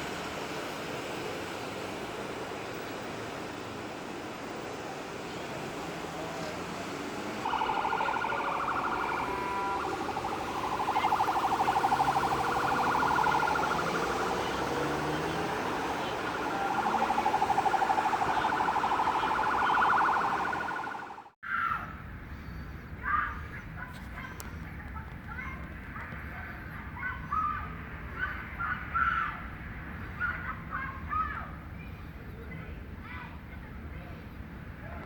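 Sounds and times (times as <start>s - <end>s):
traffic noise: 0.0s - 35.0s
emergency siren wailing: 7.1s - 21.4s.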